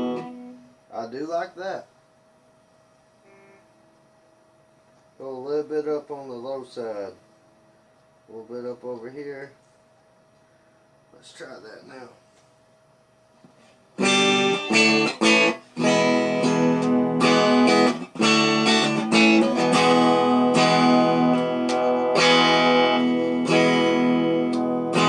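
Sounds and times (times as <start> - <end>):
electric guitar strummed chords: 0.0 - 0.7, 14.0 - 25.0.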